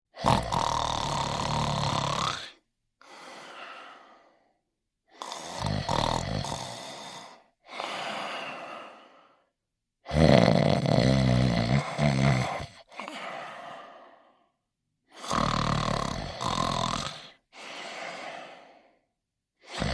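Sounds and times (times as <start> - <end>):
cartoon dog snoring: 0.1 - 2.6, 5.1 - 7.9, 10.0 - 12.9, 15.2 - 17.4, 19.6 - 19.9.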